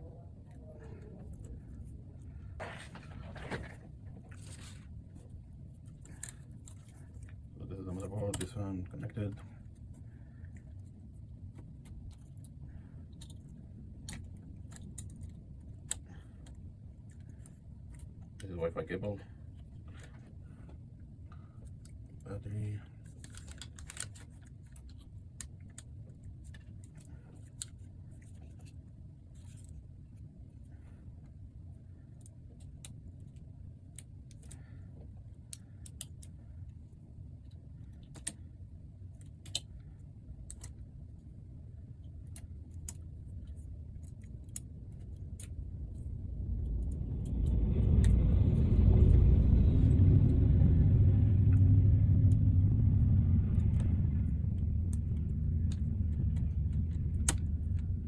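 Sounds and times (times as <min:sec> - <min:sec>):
low steady rumble: 0:00.0 - 0:58.0
small parts clicking: 0:37.4 - 0:38.5.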